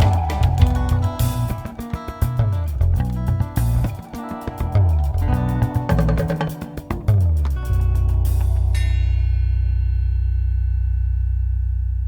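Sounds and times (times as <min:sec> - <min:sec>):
percussive beat: 0:00.0 - 0:09.1
samba song: 0:00.0 - 0:09.2
plucked guitar: 0:00.0 - 0:09.6
bass line: 0:00.0 - 0:12.0.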